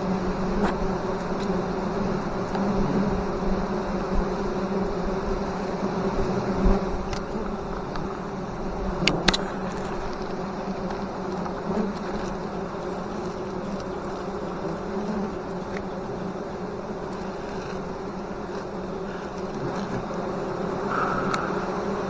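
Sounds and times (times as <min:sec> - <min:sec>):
honeybees buzzing: 0:00.0 - 0:22.0.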